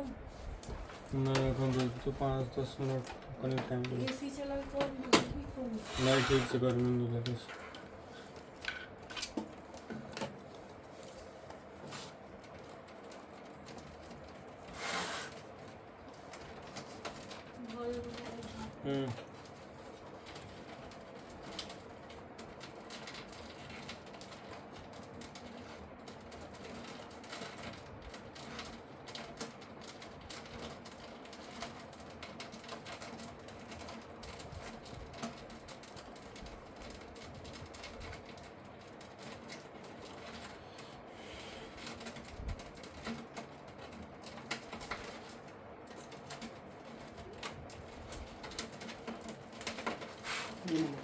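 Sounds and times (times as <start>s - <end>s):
rubbing and scraping: 5.6s - 8.6s.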